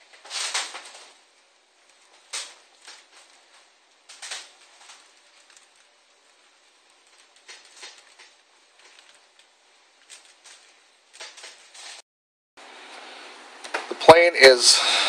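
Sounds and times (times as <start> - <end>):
plastic film crinkling: 0.0 - 12.0.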